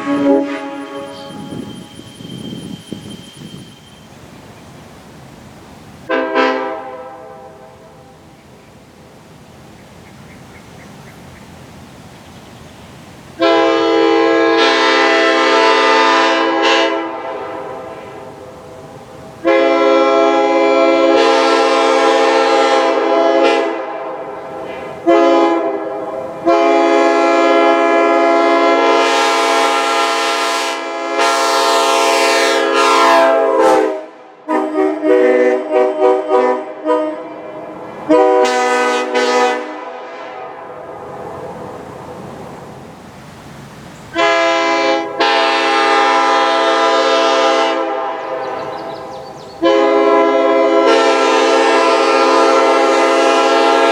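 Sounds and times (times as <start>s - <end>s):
train air horn blasts: 0.0s - 3.8s, 6.1s - 8.2s, 13.4s - 41.3s, 44.2s - 53.9s.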